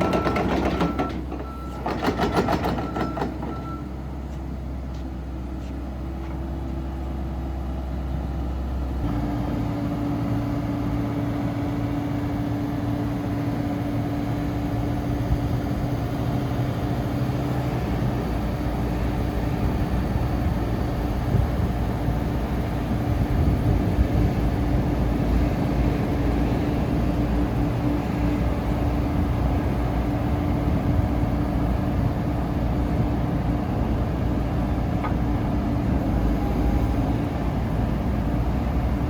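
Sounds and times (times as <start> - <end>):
excavator diesel engine running: 0.0 - 39.0.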